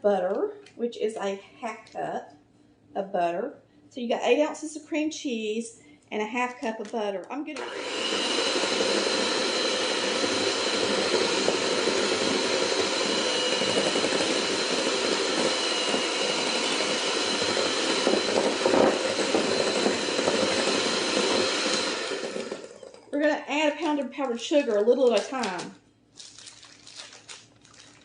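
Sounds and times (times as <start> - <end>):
electric mixer whining: 7.6 - 23.2.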